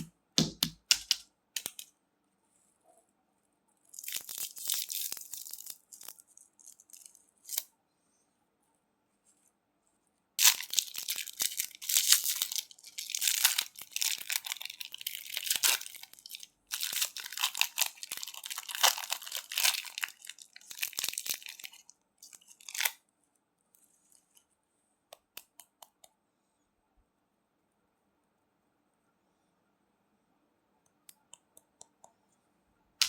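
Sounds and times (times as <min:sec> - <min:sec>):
candy crunching: 0:03.9 - 0:07.7, 0:10.4 - 0:23.0.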